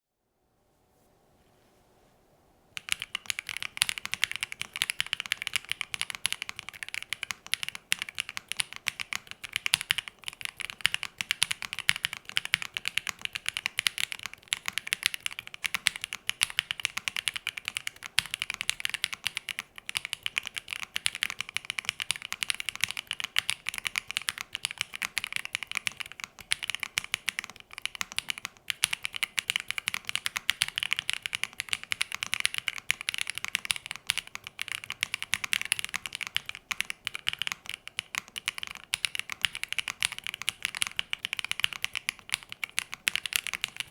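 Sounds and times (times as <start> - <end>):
mechanical keyboard typing: 2.8 - 43.9.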